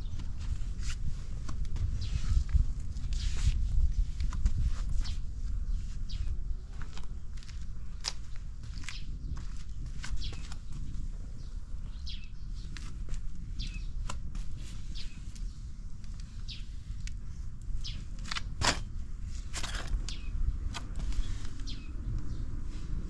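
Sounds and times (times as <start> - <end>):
small birds chirping: 5.0 - 18.5, 19.4 - 22.9.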